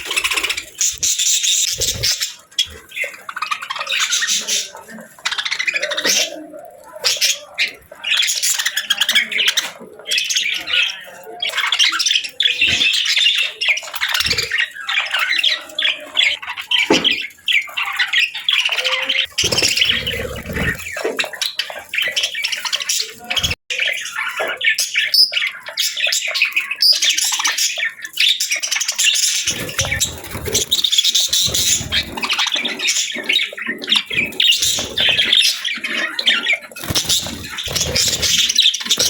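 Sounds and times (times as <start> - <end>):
budgerigars chattering: 0.0 - 39.0.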